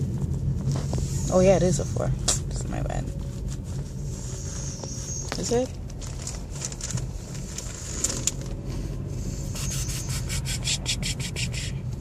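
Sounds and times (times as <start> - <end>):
handling noise near microphone: 0.0 - 8.9
short rustling strokes: 0.0 - 10.5
low steady hum: 0.0 - 12.0.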